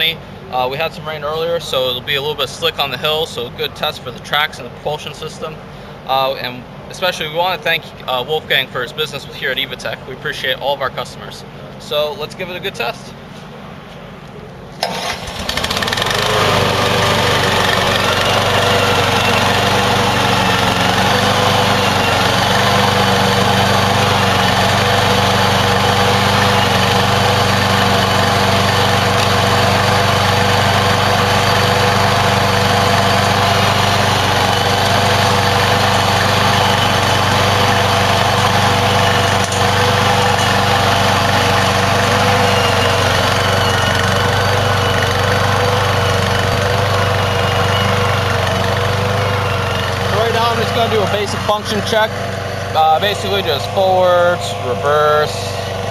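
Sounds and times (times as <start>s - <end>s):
mower engine running: 14.8s - 55.9s.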